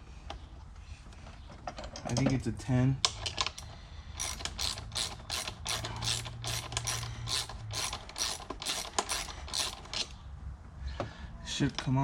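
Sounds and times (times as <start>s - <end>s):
ratchet wrench clicking: 3.1s - 10.2s.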